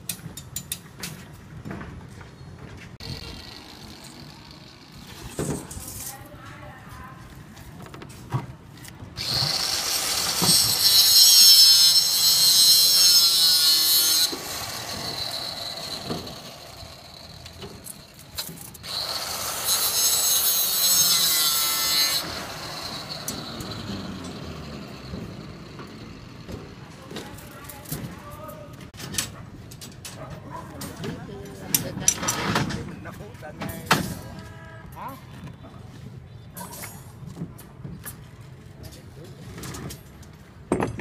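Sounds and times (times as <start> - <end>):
power cutting tool whining: 9.2 - 18.1, 18.8 - 25.7.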